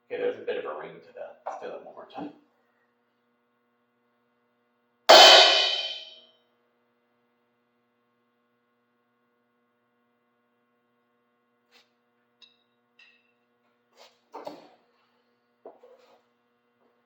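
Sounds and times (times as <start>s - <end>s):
cymbal crash choked: 5.1s - 6.2s.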